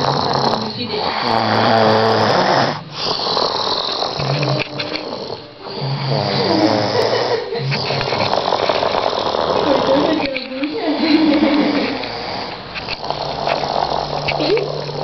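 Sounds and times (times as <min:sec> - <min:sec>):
woman snoring loudly: 0:00.0 - 0:10.2, 0:11.6 - 0:15.0.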